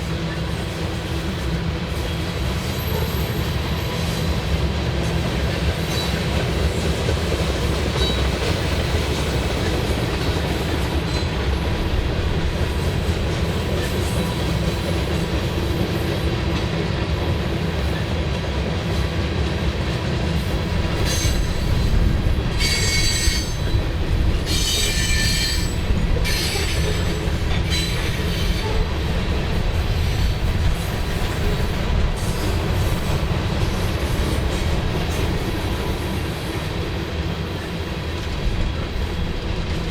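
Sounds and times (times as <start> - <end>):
train wheels rumbling on rail: 0.0 - 39.9
high-pitched wheel squeal: 24.5 - 26.8.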